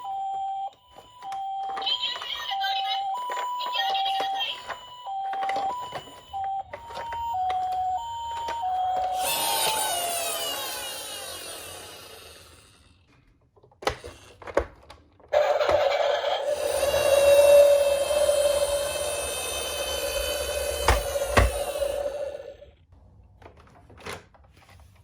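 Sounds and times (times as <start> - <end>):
electronic two-tone siren: 0.0 - 12.7, 15.4 - 22.7
steady siren tone: 15.4 - 22.7.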